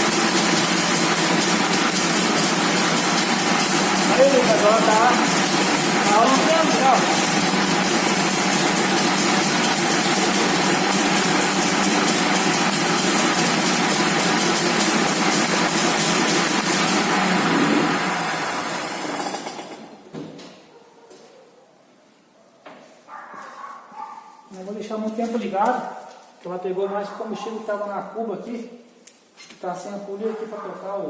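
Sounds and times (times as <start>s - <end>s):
two-stroke engine running: 0.0s - 20.0s.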